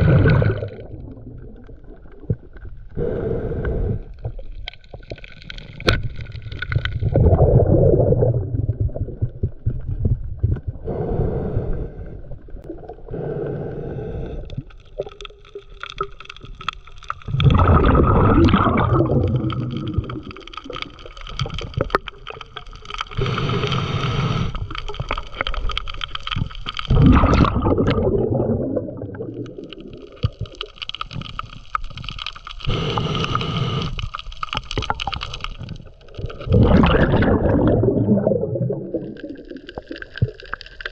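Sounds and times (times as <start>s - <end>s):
exhaled bubbles gurgling underwater: 0.0s - 40.9s
scuba hissing inhales: 3.0s - 4.2s, 10.8s - 12.4s, 13.0s - 14.7s, 23.1s - 24.8s, 32.6s - 34.2s.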